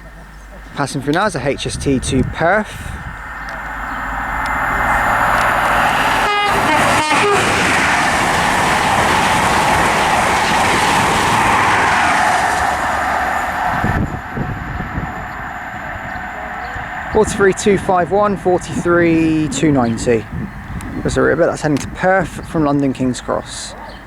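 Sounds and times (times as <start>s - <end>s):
train passing at speed: 0.0s - 24.0s
train horn blasts: 5.0s - 7.8s.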